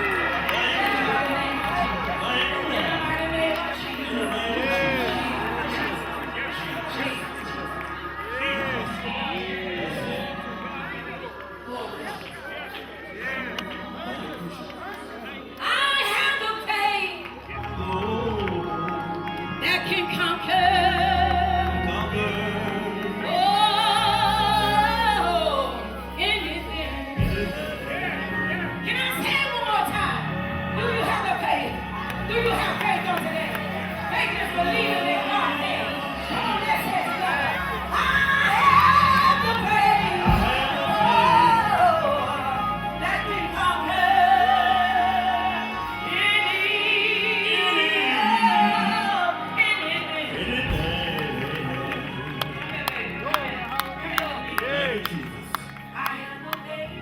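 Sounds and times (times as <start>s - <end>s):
instrumental accompaniment with bass: 17.4s - 57.0s.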